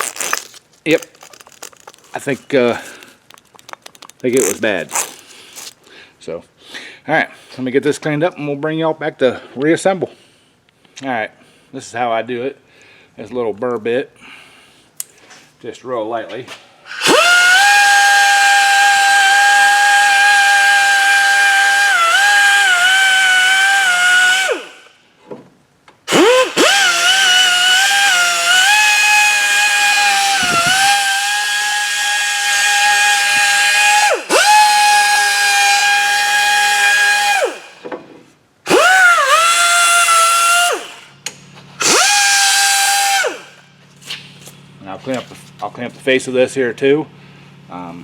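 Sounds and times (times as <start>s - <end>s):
die grinder whining: 16.9s - 24.9s, 26.1s - 37.8s, 38.7s - 41.1s, 41.8s - 43.6s.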